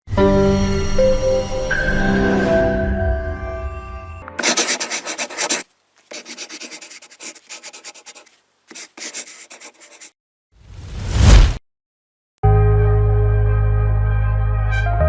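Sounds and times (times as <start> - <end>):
dry scratching strokes: 4.4 - 10.2.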